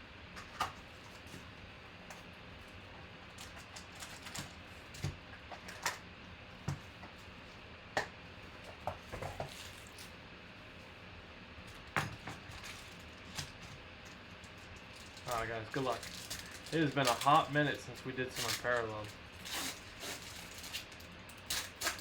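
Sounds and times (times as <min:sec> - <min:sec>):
card packs handled and opened: 0:14.5 - 0:22.0.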